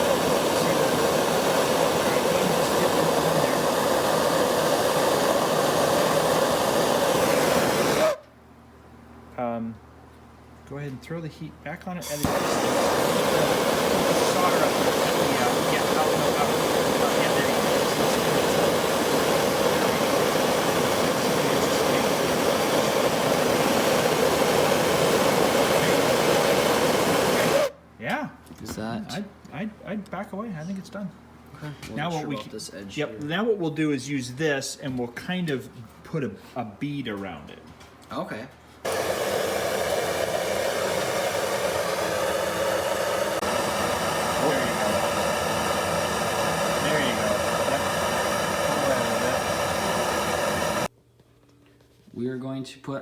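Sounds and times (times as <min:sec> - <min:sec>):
gas torch roaring: 0:00.0 - 0:08.3, 0:12.0 - 0:27.8, 0:38.8 - 0:50.9.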